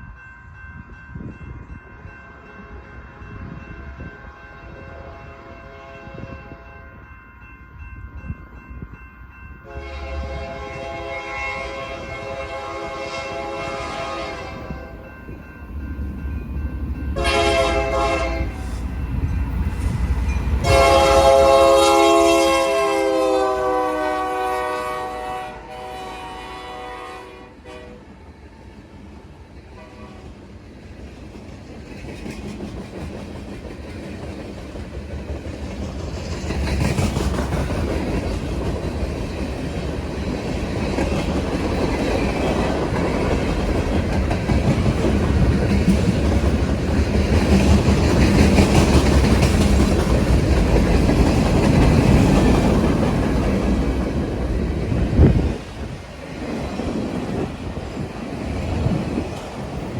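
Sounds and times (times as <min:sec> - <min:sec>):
locomotive air horn blasts: 0:04.0 - 0:06.8, 0:09.6 - 0:14.9, 0:17.2 - 0:18.7, 0:20.6 - 0:28.1, 0:29.8 - 0:30.2
train wheels clicking on rails: 0:28.0 - 0:59.9.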